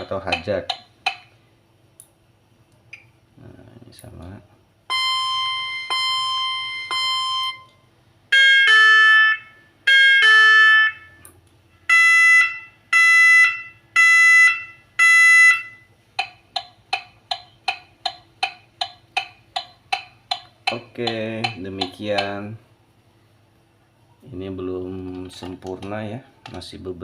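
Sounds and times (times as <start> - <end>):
electronic warning beeps: 4.9 - 11.2, 11.9 - 15.9.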